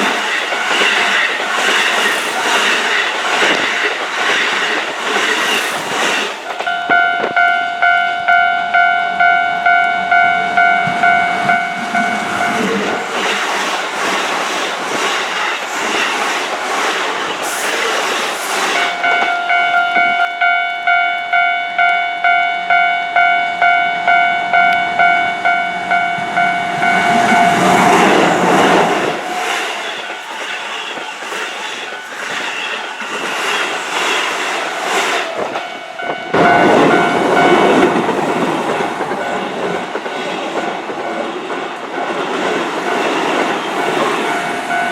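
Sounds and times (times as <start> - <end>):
train rumbling over rails: 0.0 - 8.4, 9.2 - 21.0, 23.5 - 44.9
level-crossing warning bell: 6.5 - 13.4, 18.6 - 33.0, 34.5 - 44.9.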